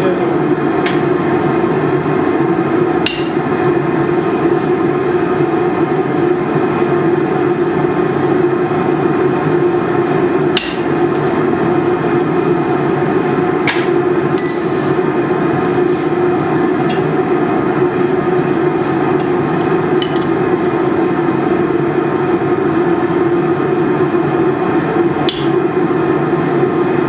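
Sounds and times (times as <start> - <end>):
hammer striking steel: 3.1 - 3.4, 10.6 - 11.0, 13.7 - 14.8.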